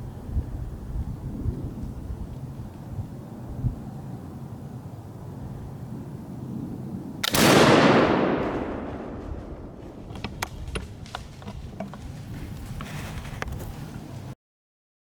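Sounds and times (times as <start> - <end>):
gunshot boom: 7.2 - 9.8.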